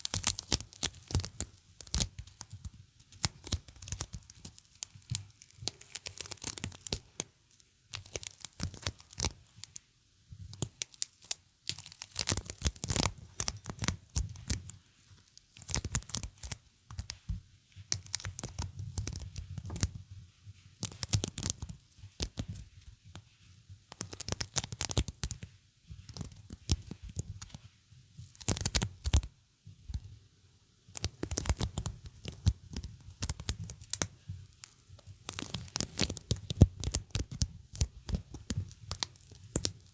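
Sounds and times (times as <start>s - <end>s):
sticky material peeling: 34.6s - 39.9s.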